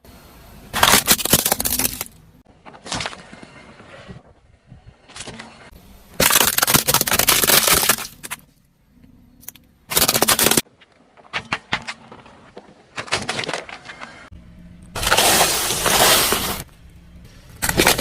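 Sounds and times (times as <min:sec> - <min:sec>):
objects crunching under car tyres: 0:00.7 - 0:04.3, 0:05.0 - 0:08.5, 0:15.0 - 0:16.8, 0:17.6 - 0:18.0.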